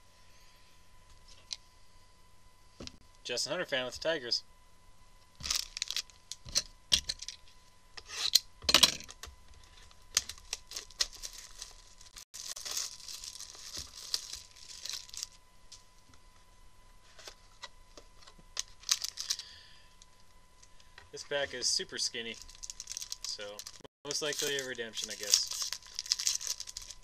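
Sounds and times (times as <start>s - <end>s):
card pack wrapper tearing: 5.4s - 7.3s, 10.1s - 15.4s, 18.6s - 19.4s, 22.2s - 27.0s
plastic wrapper crinkling: 5.4s - 7.4s, 9.7s - 15.4s, 18.2s - 19.5s, 22.2s - 27.0s
cards and packaging clicking: 10.1s - 15.3s, 18.2s - 19.5s, 22.3s - 27.0s.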